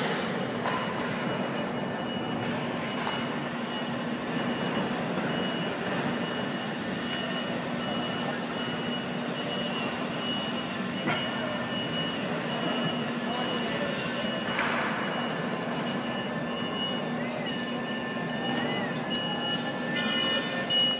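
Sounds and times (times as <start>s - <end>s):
low machinery hum: 0.0s - 20.9s
thin steady high tone: 15.8s - 20.9s.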